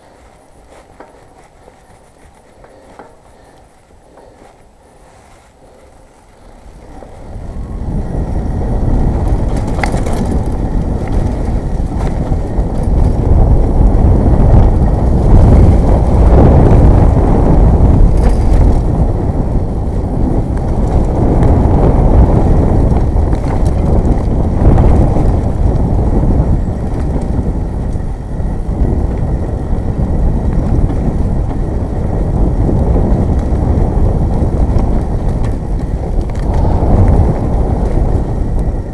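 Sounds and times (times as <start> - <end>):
bike rattling over ground: 0.0 - 38.9
wind rushing past microphone: 0.0 - 38.9.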